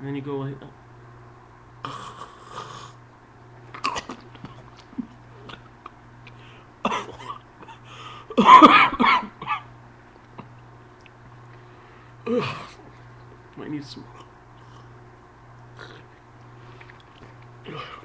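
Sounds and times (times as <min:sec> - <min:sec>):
man coughing and sputtering: 0:03.7 - 0:04.7, 0:06.8 - 0:09.7, 0:12.3 - 0:12.9, 0:17.6 - 0:18.0.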